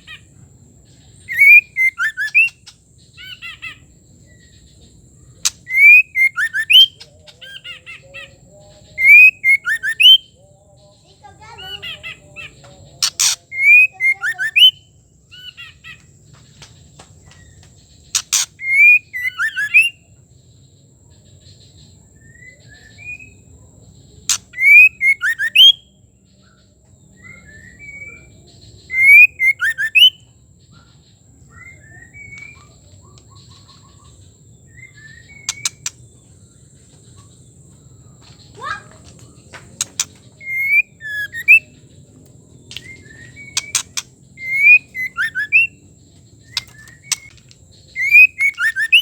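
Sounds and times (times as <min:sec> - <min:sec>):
bird whistling gliding notes: 0:01.2 - 0:02.6, 0:31.5 - 0:36.0, 0:39.8 - 0:41.9, 0:42.6 - 0:49.0
bird sharp click: 0:13.0 - 0:13.4, 0:18.2 - 0:18.5, 0:39.6 - 0:40.7, 0:42.7 - 0:45.2, 0:46.5 - 0:47.6.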